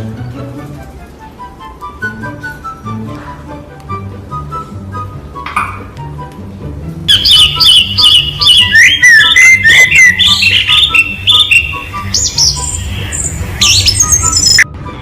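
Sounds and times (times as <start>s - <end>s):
faint background music: 0.0s - 15.0s
parrot chirping and whistling: 7.1s - 14.6s.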